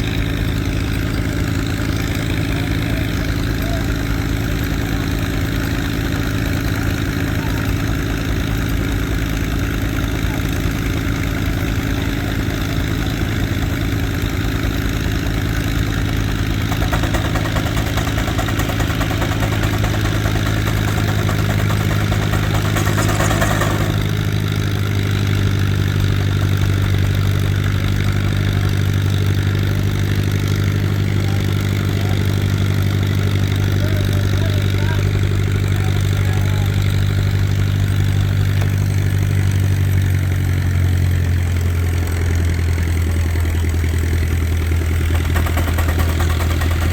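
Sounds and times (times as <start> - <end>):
steam engine and sawmill hum: 0.0 - 46.9.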